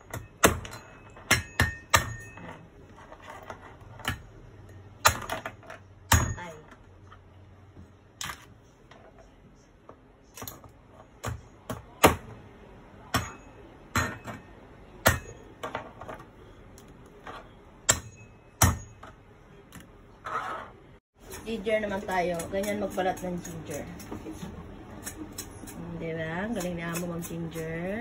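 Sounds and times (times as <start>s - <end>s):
crab claws being pounded: 11.2s - 12.4s.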